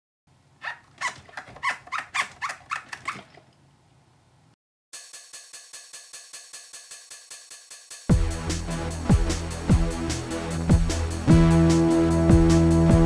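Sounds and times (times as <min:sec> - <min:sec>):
short falling squeaks: 0:00.6 - 0:03.4
electronic music with beat: 0:05.3 - 0:13.0.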